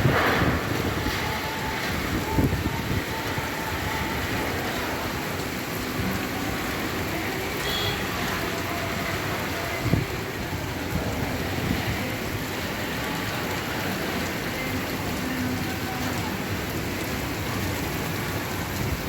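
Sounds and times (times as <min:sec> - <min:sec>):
low rumbles: 0:00.0 - 0:03.5
torrential rain: 0:00.0 - 0:19.0.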